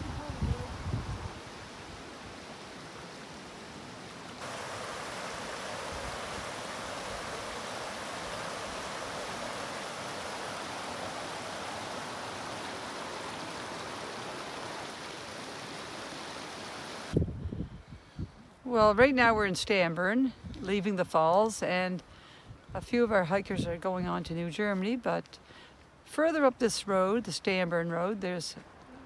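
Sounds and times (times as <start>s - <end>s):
waterfall and stream rushing: 0.0s - 17.2s.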